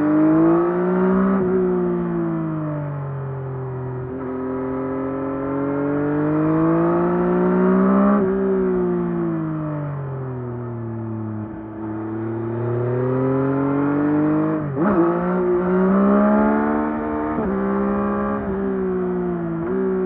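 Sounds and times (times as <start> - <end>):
motorcycle engine revving: 3.8 - 9.6, 11.2 - 20.0.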